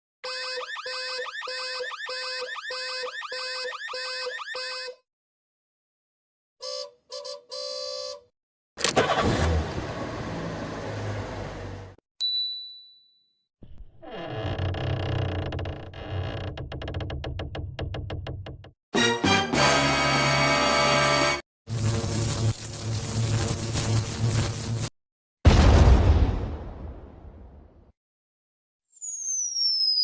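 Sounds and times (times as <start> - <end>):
electronic alarm tone: 0.2 - 5.0.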